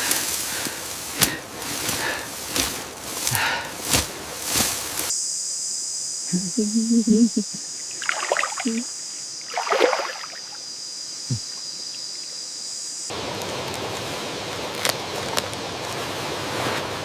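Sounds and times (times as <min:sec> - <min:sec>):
high-pitched hiss: 0:00.0 - 0:17.0
flowing water: 0:07.8 - 0:10.6.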